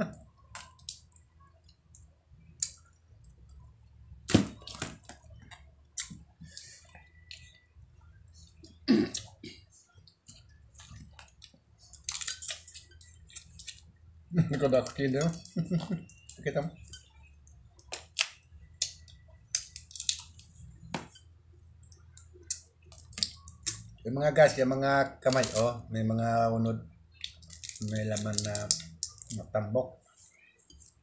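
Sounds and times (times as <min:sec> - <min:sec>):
chewing: 0:10.1 - 0:13.9
crab shell cracking: 0:17.8 - 0:20.4, 0:27.2 - 0:29.4.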